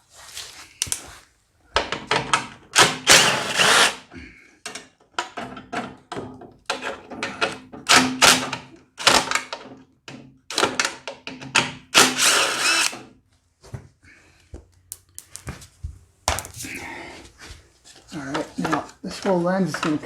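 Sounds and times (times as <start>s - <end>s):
power drill whirring: 2.8s - 4.0s, 11.9s - 13.1s.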